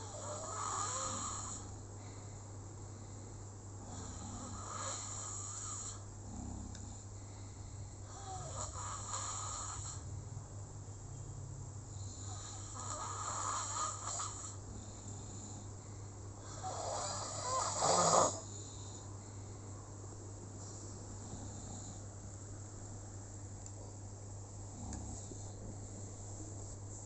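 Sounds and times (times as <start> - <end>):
breathy snoring: 0.0 - 2.3, 3.8 - 10.1, 11.9 - 19.4, 21.1 - 22.1, 24.7 - 25.6
steady low hum: 0.0 - 27.0.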